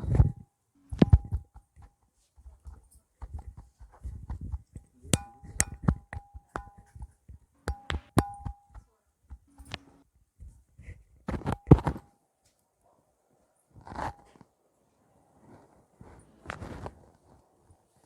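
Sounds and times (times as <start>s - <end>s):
faint rustling and shuffling: 0.0s - 5.1s, 8.7s - 18.0s.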